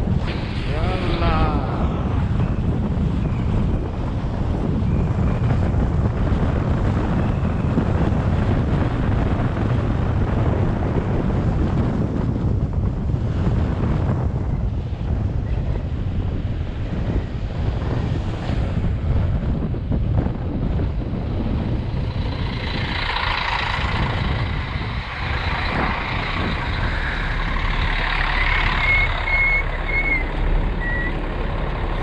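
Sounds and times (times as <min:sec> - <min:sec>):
wind buffeting microphone: 0:00.0 - 0:32.0
vehicle passing by: 0:21.3 - 0:32.0.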